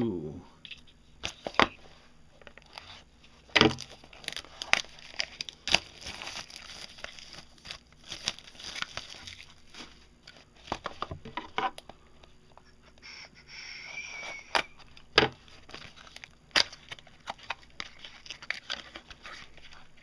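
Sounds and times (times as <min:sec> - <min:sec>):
packaging tearing and crinkling: 0:03.7 - 0:09.9, 0:15.5 - 0:20.0.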